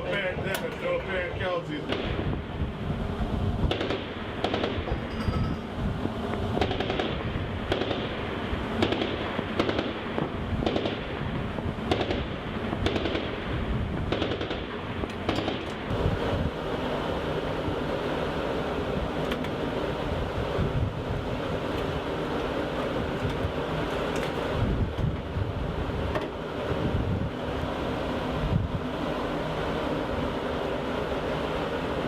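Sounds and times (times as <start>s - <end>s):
wind: 0.0s - 32.0s
sharp gunshots: 1.8s - 2.4s, 3.6s - 5.1s, 6.6s - 15.8s.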